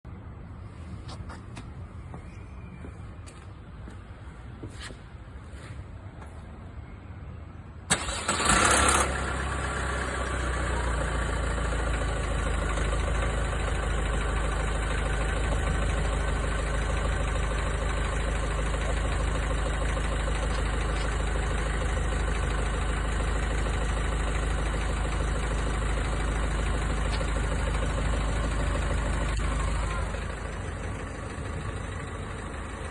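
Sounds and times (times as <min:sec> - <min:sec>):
diesel engine starting and idling: 0:07.7 - 0:32.9.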